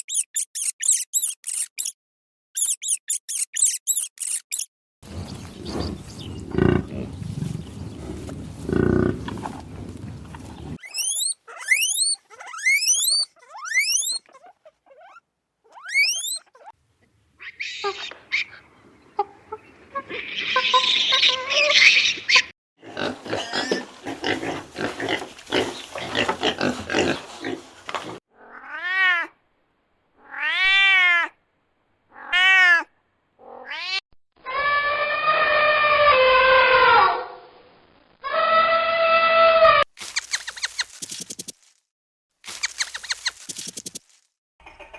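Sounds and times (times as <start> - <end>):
animal calls: 5.1 - 16.8.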